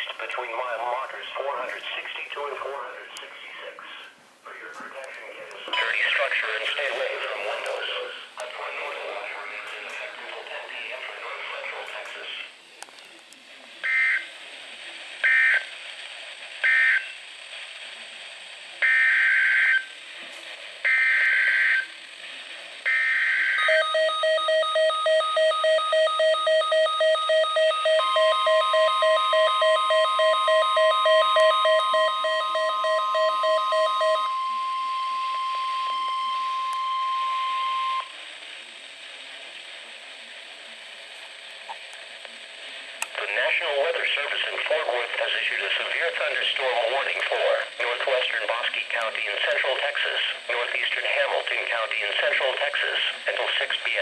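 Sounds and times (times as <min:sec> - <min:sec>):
radio data bursts: 0:00.0 - 0:12.4, 0:43.1 - 0:54.0
steady warning alarm tone: 0:16.6 - 0:17.2, 0:18.8 - 0:19.9, 0:20.8 - 0:21.9, 0:22.9 - 0:38.2
receiver beep alarm: 0:18.8 - 0:19.9, 0:20.9 - 0:21.9, 0:22.9 - 0:38.2.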